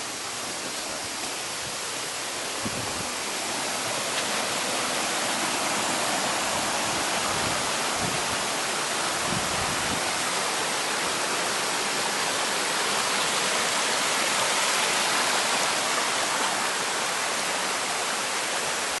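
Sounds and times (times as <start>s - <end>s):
stream rushing over rocks: 0.0s - 19.0s.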